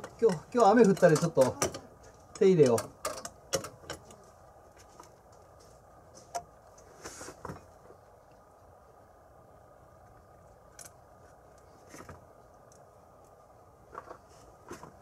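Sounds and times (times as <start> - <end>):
tools clicking and knocking: 0.0 - 4.2.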